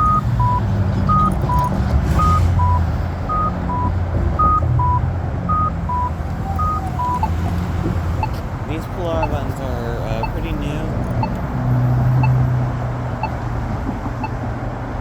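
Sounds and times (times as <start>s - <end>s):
alternating electronic beeps: 0.0s - 7.4s, 8.1s - 8.4s, 9.1s - 11.5s, 12.2s - 12.4s, 13.2s - 13.4s
traffic rumble: 0.0s - 15.0s.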